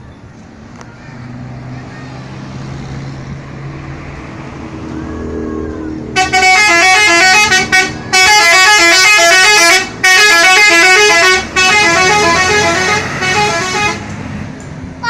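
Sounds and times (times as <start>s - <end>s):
bus engine running: 0.0s - 15.0s
musical air horn tune: 6.2s - 14.1s.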